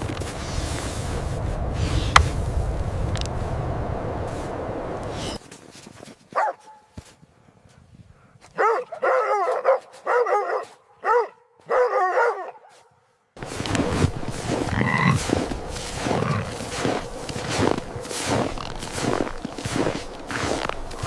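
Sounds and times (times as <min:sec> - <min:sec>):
dog barking: 0:06.3 - 0:06.9, 0:08.5 - 0:12.9.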